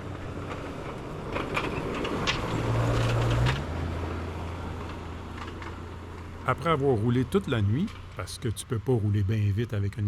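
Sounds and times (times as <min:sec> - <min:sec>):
car engine hum: 0:00.0 - 0:10.0
road noise: 0:00.0 - 0:10.0.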